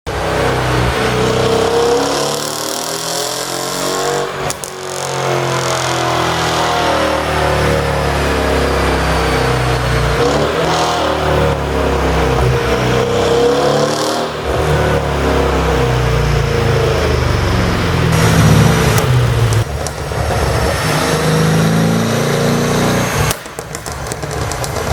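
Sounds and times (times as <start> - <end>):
car engine revving: 0.1 - 24.9
exhaust pops: 4.3 - 5.1, 18.1 - 21.1, 23.2 - 24.9.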